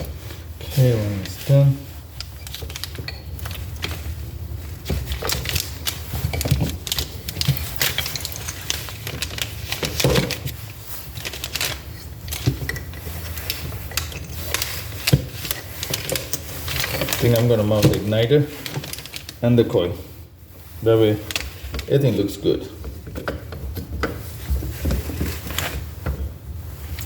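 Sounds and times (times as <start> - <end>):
metal parts clicking and rattling: 0.8 - 19.4.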